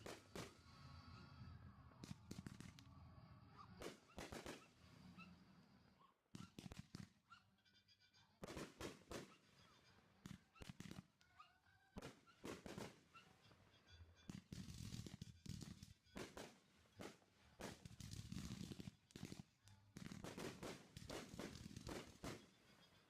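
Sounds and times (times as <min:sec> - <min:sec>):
fireworks popping and crackling: 0:00.0 - 0:00.8, 0:02.0 - 0:03.0, 0:03.8 - 0:05.0, 0:06.3 - 0:07.2, 0:08.4 - 0:09.6, 0:10.2 - 0:11.2, 0:12.0 - 0:13.2, 0:14.3 - 0:22.7.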